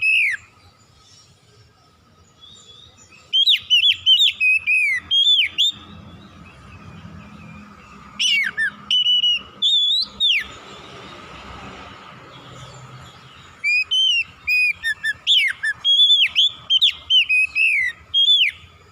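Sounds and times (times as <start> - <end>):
bird singing whistled phrases: 0.0 - 0.9, 2.3 - 10.6, 13.1 - 18.9.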